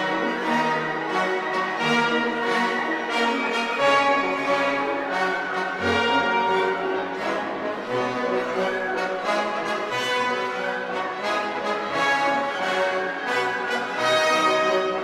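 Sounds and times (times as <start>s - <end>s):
orchestral music with brass: 0.0s - 15.0s
strings: 0.0s - 15.0s.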